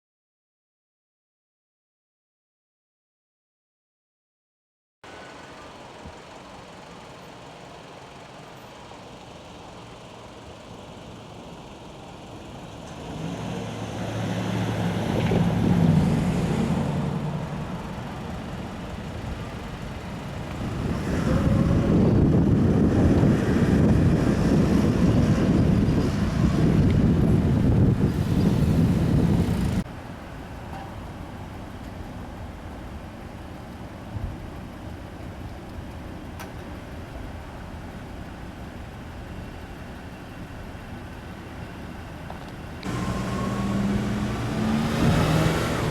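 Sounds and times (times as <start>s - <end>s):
low rumble of passing train: 5.1s - 44.9s
vehicle passing: 13.0s - 29.8s, 42.8s - 45.9s.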